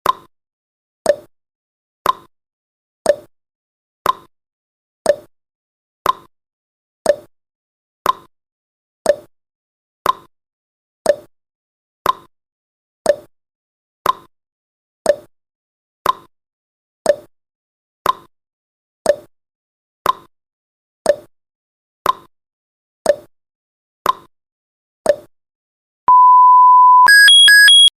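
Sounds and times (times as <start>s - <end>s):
high-pitched beep: 26.1s - 27.9s
timer ticking: 26.1s - 27.9s.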